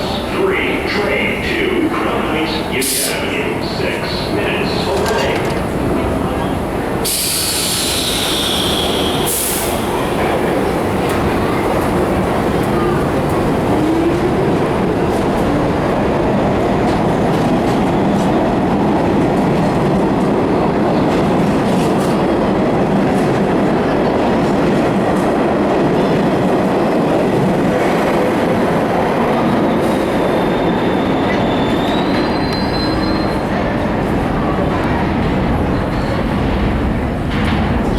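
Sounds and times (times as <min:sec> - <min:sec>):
subway train rumbling on rails: 0:00.0 - 0:37.9
high wheel squeal: 0:30.4 - 0:33.5.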